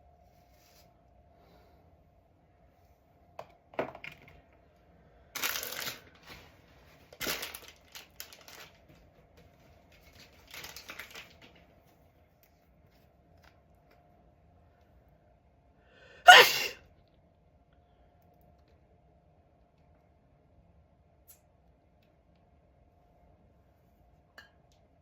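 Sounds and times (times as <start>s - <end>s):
handling rustling and crinkling: 5.4s - 14.0s.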